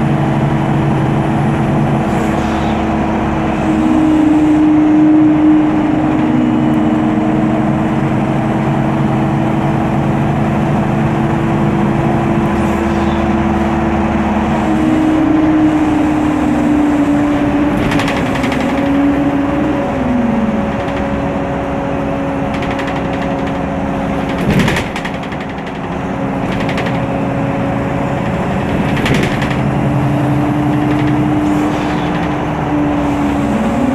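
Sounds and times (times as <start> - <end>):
bus engine and fan whine: 0.0 - 33.9.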